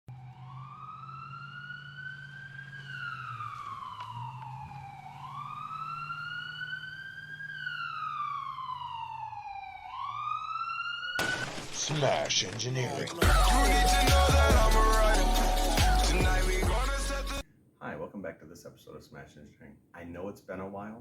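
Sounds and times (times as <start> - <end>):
wailing siren: 0.1 - 11.7, 13.2 - 17.4.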